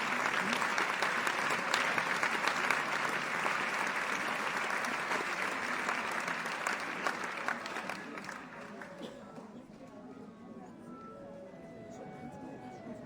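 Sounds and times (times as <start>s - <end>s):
audience applauding: 0.0s - 9.0s.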